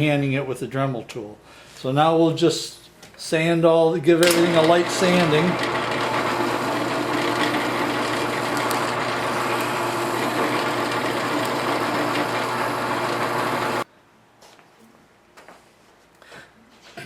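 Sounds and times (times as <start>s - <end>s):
drill press motor whirring: 4.2s - 13.8s.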